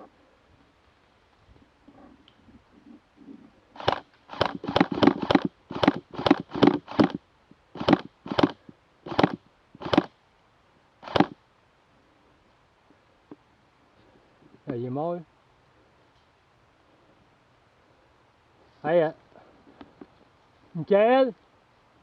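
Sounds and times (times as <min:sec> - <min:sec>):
airsoft gun shots: 0:03.8 - 0:07.2, 0:07.8 - 0:10.1, 0:11.0 - 0:11.4.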